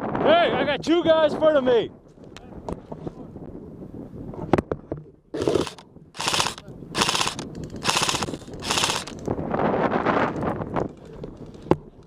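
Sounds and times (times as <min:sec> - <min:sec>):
airsoft rifle full-auto bursts: 0:05.4 - 0:09.2.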